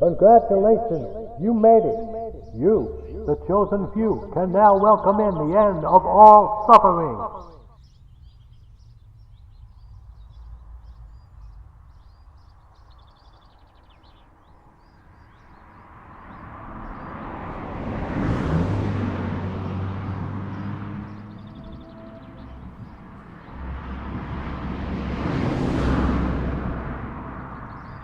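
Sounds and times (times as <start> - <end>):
low outdoor rumble: 0.0 - 13.8, 16.0 - 28.0
birds chirping: 0.0 - 28.0
low steady engine hum: 0.0 - 28.0
vehicle passing by: 0.0 - 28.0.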